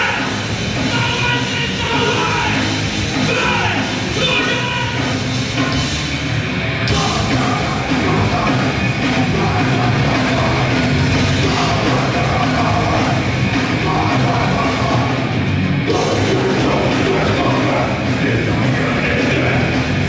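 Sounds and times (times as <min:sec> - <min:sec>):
grindcore band playing live: 0:00.0 - 0:20.0.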